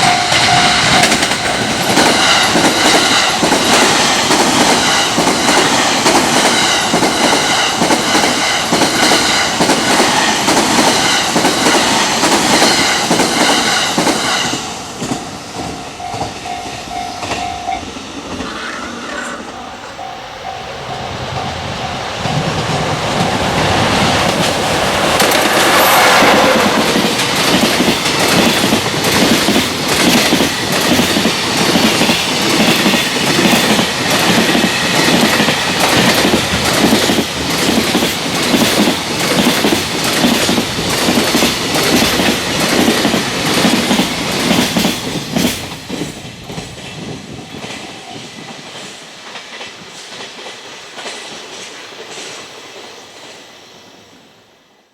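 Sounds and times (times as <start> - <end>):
train wheels clattering on rail joints: 0.0 - 18.6, 19.5 - 52.5
freight train passing: 0.0 - 54.9
level-crossing bell ringing: 15.8 - 18.0, 19.5 - 22.7.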